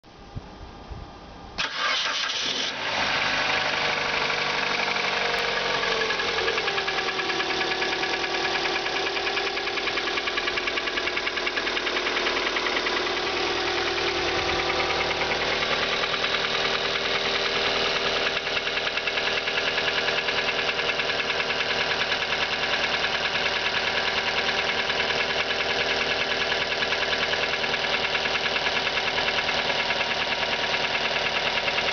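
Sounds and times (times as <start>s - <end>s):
car engine starting and idling: 1.6s - 31.9s
fast even engine knock: 6.7s - 31.9s.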